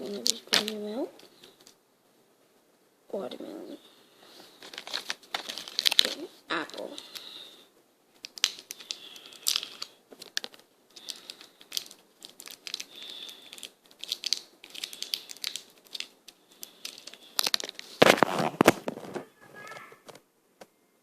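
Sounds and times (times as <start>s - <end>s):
candy wrapper crinkling: 0.0s - 1.8s, 4.5s - 19.1s.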